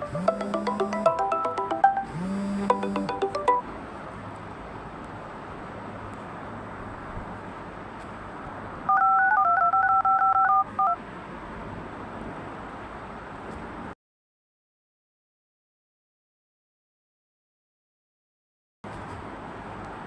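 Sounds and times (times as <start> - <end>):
telephone dialing beeps: 8.9 - 11.0.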